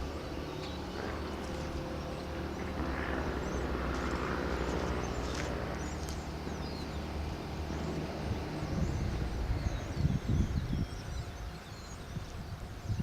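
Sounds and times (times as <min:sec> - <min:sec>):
excavator diesel engine running: 0:00.0 - 0:09.8.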